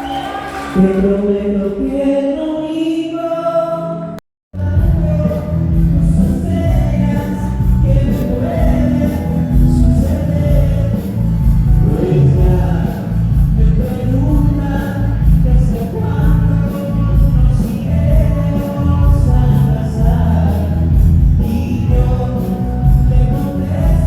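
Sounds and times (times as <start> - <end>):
song with vocals and strong bass: 0.0 - 24.0.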